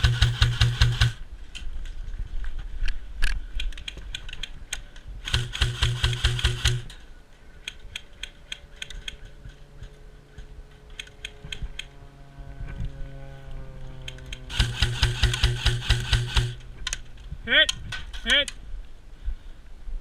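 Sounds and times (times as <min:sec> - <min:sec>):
airsoft guns firing bursts: 0:00.0 - 0:01.2, 0:05.2 - 0:06.9, 0:14.5 - 0:17.0
single airsoft shots clicking: 0:05.3 - 0:06.9, 0:14.1 - 0:17.0.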